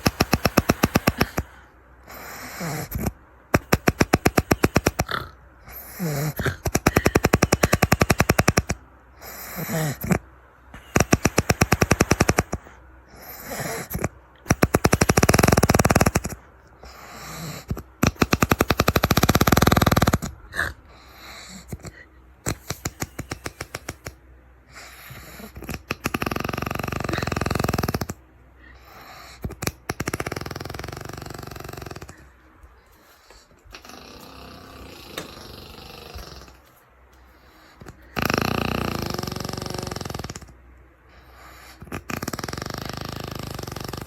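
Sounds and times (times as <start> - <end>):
man snoring loudly: 0.0 - 10.2, 10.8 - 20.8, 24.8 - 28.2, 29.6 - 32.2, 33.7 - 36.6, 38.0 - 40.5, 41.8 - 44.0.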